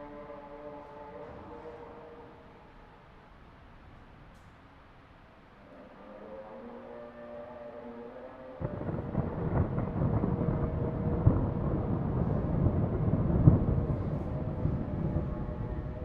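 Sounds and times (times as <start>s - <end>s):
rolling thunder rumble: 8.6s - 16.0s
sharp thunder claps: 8.6s - 16.0s.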